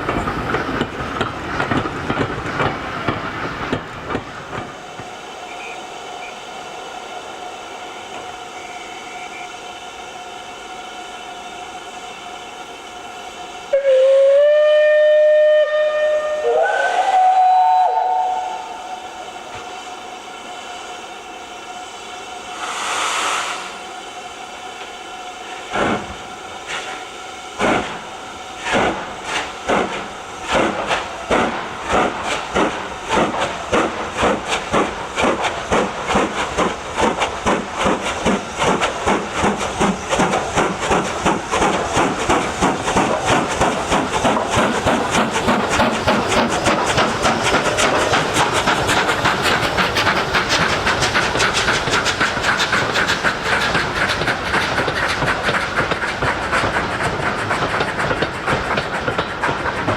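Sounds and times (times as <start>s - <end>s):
train wheels clicking over rail joints: 0.0s - 6.4s, 24.7s - 59.9s
steam locomotive exhaust beats: 0.0s - 59.9s
steam locomotive whistle: 7.9s - 9.6s, 13.7s - 19.4s
burst of steam: 22.3s - 24.3s.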